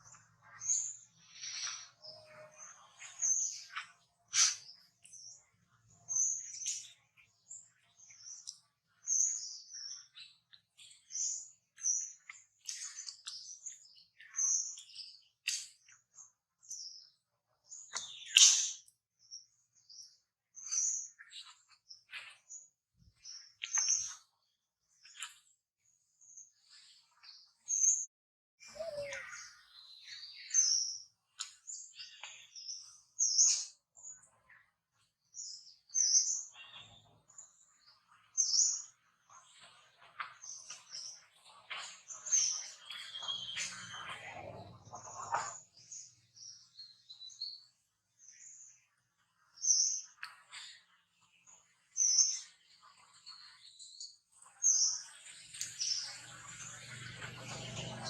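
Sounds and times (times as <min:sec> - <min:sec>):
faint animal chatter: 0:00.0 - 0:08.5, 0:28.6 - 0:30.9, 0:38.6 - 0:46.7, 0:54.5 - 0:58.0
animal chirps and squeaks: 0:28.7 - 0:29.6.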